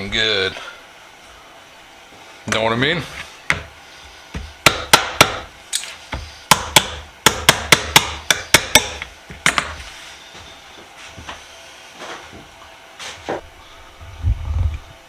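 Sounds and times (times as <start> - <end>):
sharp hard knocks: 4.3 - 5.5, 6.1 - 9.8.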